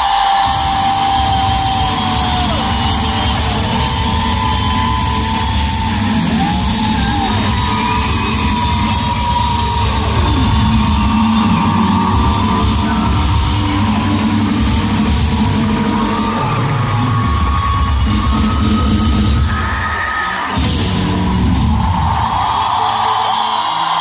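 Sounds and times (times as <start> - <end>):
live rock band music: 0.4 - 17.4.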